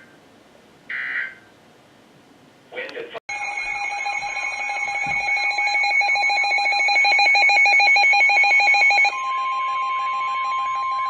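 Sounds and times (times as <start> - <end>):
steady alarm tone: 3.3 - 11.0.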